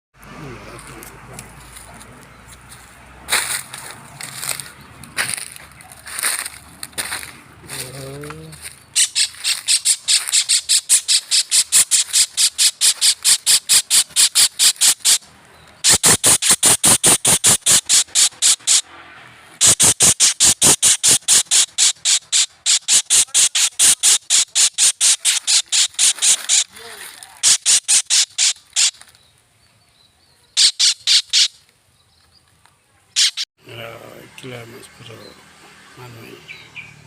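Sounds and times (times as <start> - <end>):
kingfisher harsh rasping calls: 9.0 - 18.9, 19.6 - 29.0, 30.6 - 31.6, 33.2 - 33.4.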